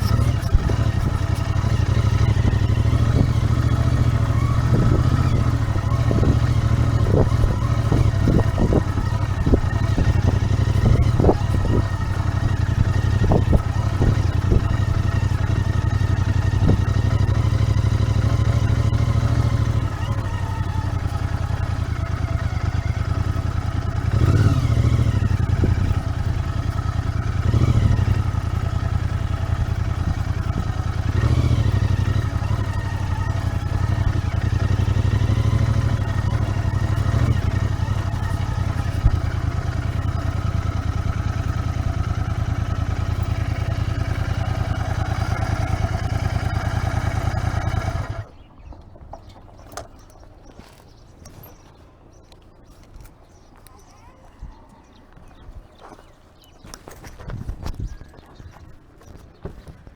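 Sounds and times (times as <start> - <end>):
motorcycle engine running: 0.0 - 59.9
sharp knocks and rattles: 41.5 - 51.8.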